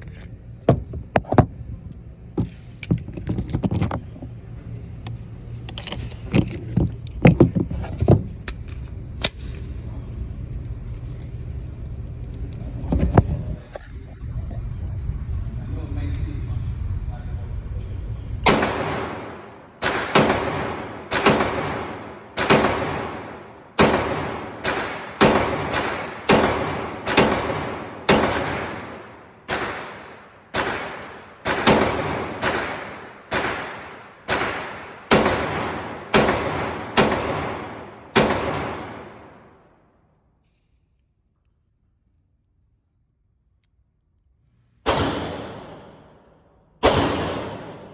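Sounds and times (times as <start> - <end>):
pistol shots with long echo: 18.4 - 39.6, 44.8 - 47.9.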